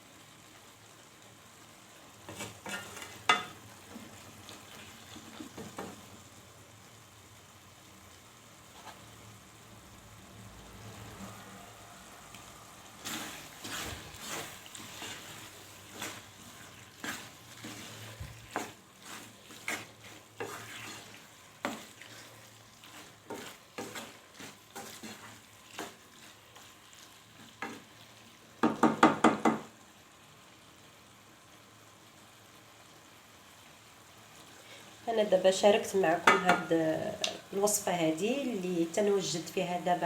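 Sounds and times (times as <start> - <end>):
utensil stirring in a pan: 0.0 - 6.6, 7.4 - 9.4, 10.6 - 29.9, 33.6 - 40.0
utensil knocking against pan: 28.6 - 29.7.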